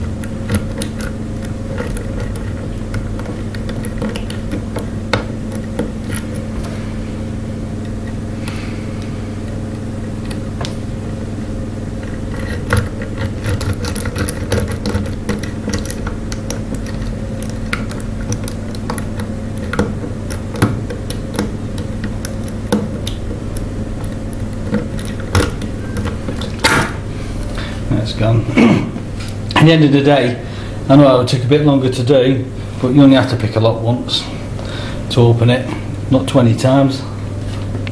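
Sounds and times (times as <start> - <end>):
lock pick clicking and scraping: 0.0 - 6.4, 12.0 - 26.8
low hum: 0.0 - 37.9.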